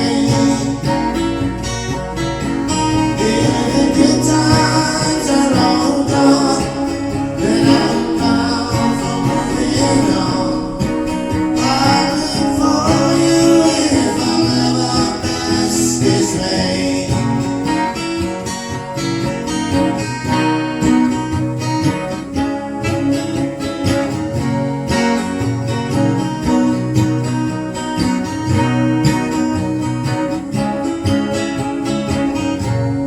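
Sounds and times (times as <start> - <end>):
person singing folk song: 0.0 - 19.3
strummed acoustic guitar: 0.0 - 33.0.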